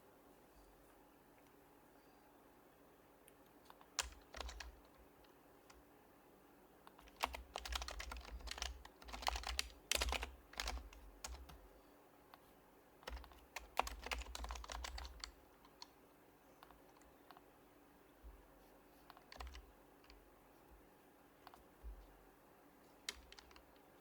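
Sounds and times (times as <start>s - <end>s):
quick keyboard keystrokes: 3.8s - 5.0s, 6.9s - 11.6s, 13.0s - 15.9s, 19.1s - 20.2s, 23.0s - 23.8s.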